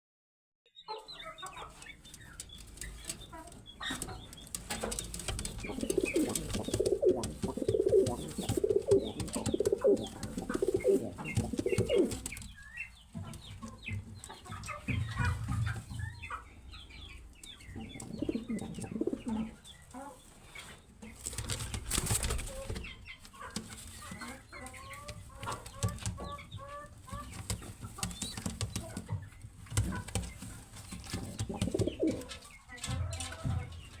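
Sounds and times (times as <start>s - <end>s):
pigeons cooing: 4.8s - 12.5s, 17.8s - 19.6s, 31.0s - 32.4s.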